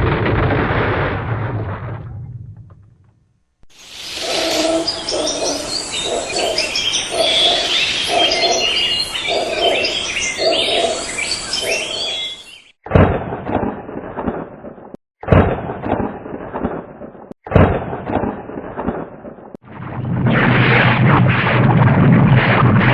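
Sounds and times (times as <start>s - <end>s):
crackling thunder: 0.0s - 3.1s, 17.6s - 22.9s
birds singing and chirping: 3.8s - 12.7s
low repeating bird call: 3.8s - 12.7s.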